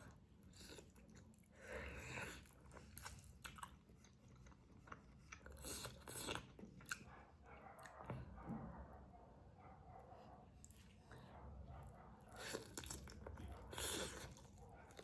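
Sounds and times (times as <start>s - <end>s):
person chewing food: 0.0s - 7.1s, 12.2s - 15.0s.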